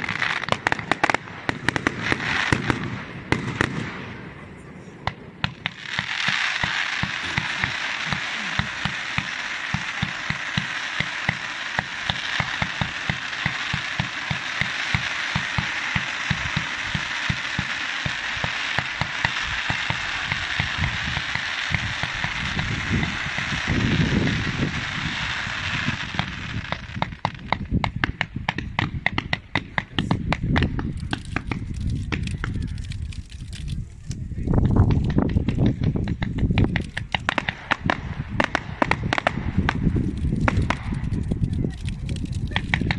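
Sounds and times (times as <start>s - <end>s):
deep firework booms: 0.0s - 33.7s, 34.3s - 42.9s
firework hiss and crackle: 0.0s - 42.9s
firework launch thumps: 5.0s - 24.7s.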